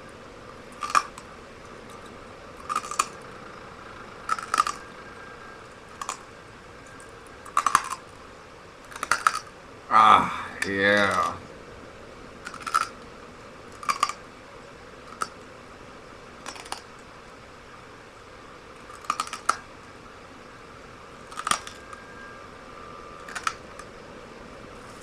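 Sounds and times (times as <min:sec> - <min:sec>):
glass crunching between teeth: 0:00.7 - 0:01.2, 0:01.8 - 0:03.2, 0:04.2 - 0:04.9, 0:05.9 - 0:06.2, 0:06.9 - 0:08.2, 0:08.9 - 0:09.5, 0:12.4 - 0:13.0, 0:13.7 - 0:14.2, 0:15.1 - 0:15.4, 0:16.4 - 0:16.9, 0:18.8 - 0:19.6, 0:21.3 - 0:21.9, 0:23.2 - 0:23.8.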